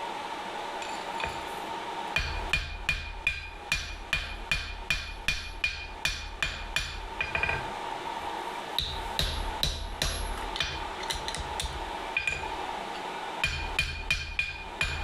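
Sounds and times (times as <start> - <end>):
hammer ringing on anvil: 2.2 - 7.6, 12.2 - 12.5, 13.4 - 15.0.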